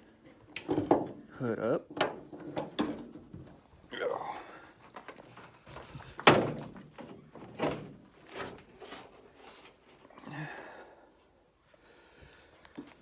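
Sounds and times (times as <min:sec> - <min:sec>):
heavy thunk: 0:06.2 - 0:06.8.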